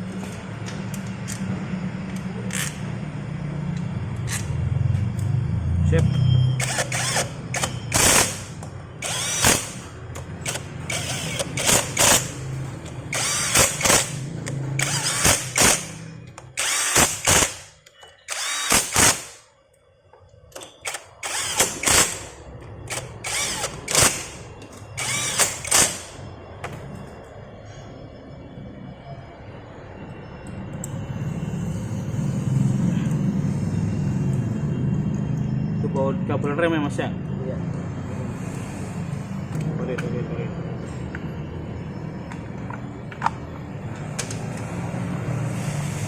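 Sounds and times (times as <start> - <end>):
power driver spinning: 6.6 - 16.0, 16.6 - 17.7, 18.3 - 19.4, 20.8 - 24.4, 25.0 - 26.2.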